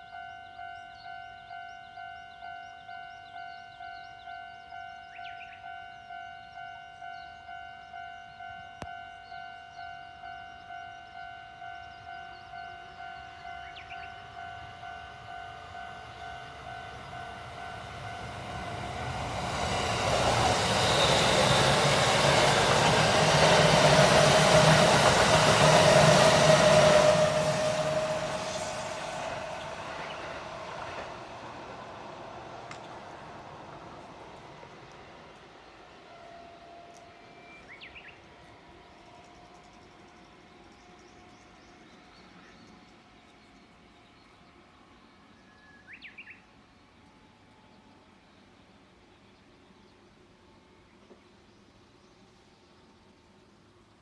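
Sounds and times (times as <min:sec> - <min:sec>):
level crossing warning bell: 0:00.0 - 0:27.6
train passing: 0:00.0 - 0:52.5.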